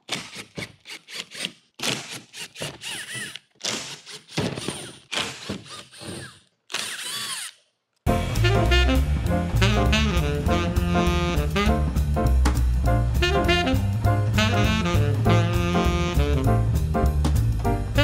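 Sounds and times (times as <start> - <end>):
power drill whining: 0.3 - 7.7
jazz music with saxophone: 8.1 - 18.0.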